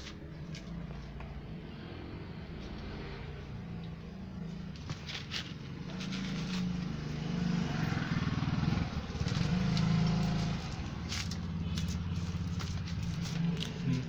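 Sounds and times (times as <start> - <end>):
small motorcycle engine revving: 5.8 - 14.0.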